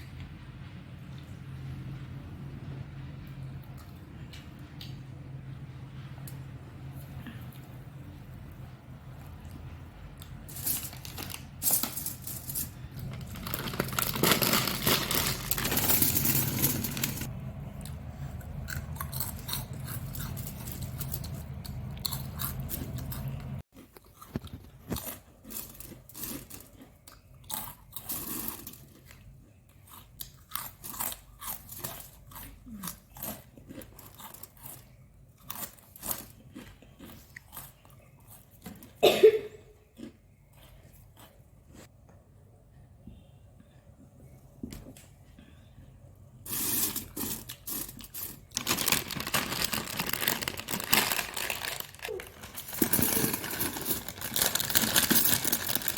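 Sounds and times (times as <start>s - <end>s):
low steady hum: 0.0s - 55.9s
person chewing crunchy snack: 16.5s - 39.0s, 46.5s - 55.9s.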